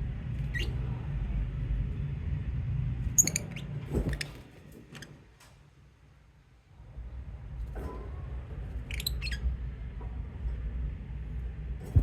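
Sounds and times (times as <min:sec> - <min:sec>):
low rumble: 0:00.0 - 0:03.2.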